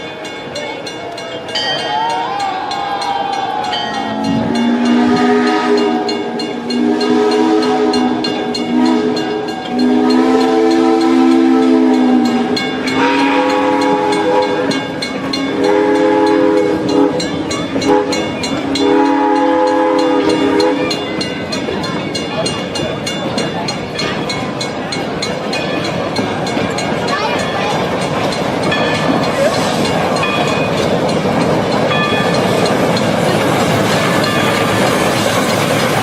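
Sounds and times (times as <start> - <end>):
train whistle blasts: 4.0 - 14.8, 15.4 - 21.0.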